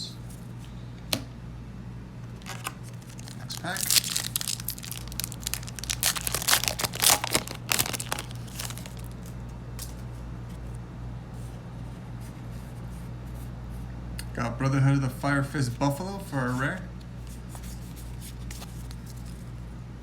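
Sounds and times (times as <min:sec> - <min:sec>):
foil wrapper tearing and crinkling: 0:02.4 - 0:10.0.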